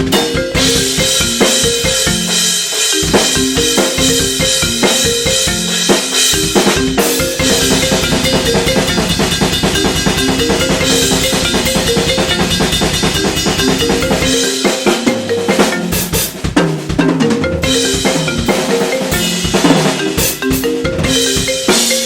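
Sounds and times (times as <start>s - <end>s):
ringtone melody: 0.0s - 16.3s, 17.2s - 22.0s
drum kit played fast: 0.0s - 22.0s.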